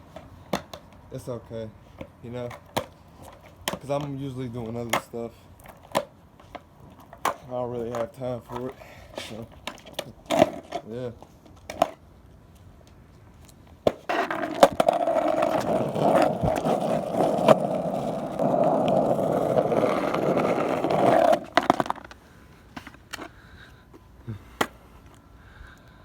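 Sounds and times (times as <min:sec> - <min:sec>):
skateboard wheels rolling on pavement: 0:00.0 - 0:25.4
skateboard clacking: 0:00.1 - 0:01.0, 0:02.0 - 0:12.0, 0:13.8 - 0:22.2.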